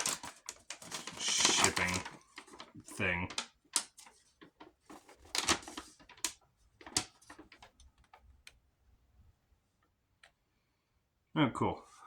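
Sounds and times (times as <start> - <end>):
packaging crinkling and clicking: 0.0 - 8.6.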